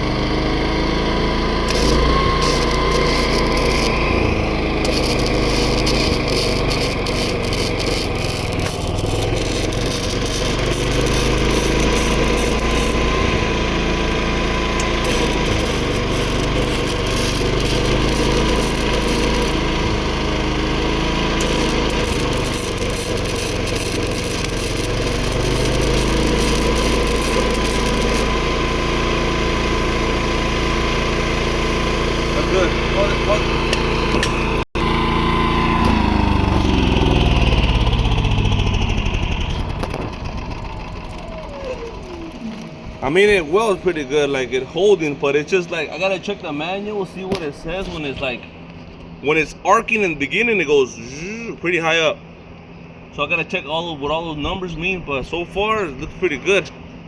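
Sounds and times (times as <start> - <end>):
generator running under load: 0.0 - 57.0
arc welding crackle: 1.2 - 34.6
thin steady whine: 1.6 - 28.9.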